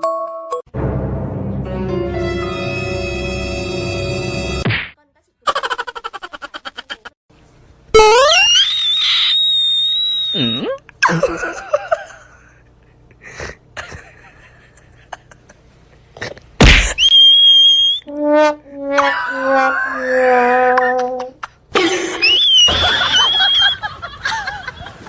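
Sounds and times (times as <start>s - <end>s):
sudden loud hit: 0.7s - 3.0s
brass-like horn notes: 0.8s - 4.6s, 18.1s - 21.2s
held whistle tone: 8.0s - 10.8s, 17.0s - 18.1s, 22.2s - 23.9s.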